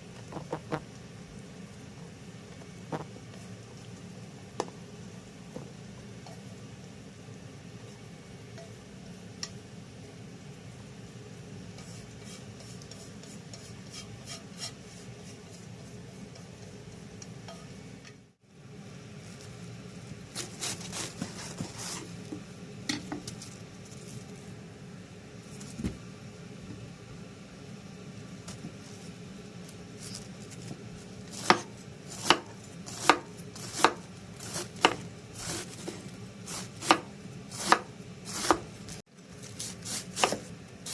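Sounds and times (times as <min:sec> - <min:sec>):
knife chopping on cutting board: 0:31.4 - 0:38.7, 0:39.9 - 0:40.5.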